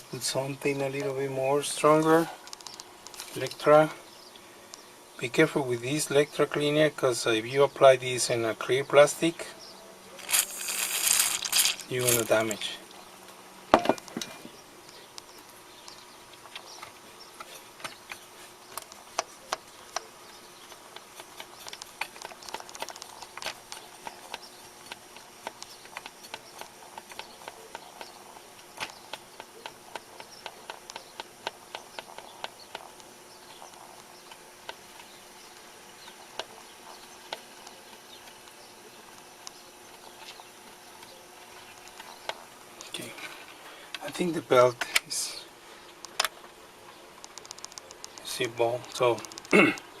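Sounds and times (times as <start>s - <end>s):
faint electric hum: 0.0s - 50.0s
small clicks and scratches: 2.4s - 3.5s, 10.2s - 12.6s, 14.0s - 43.6s, 46.0s - 49.6s.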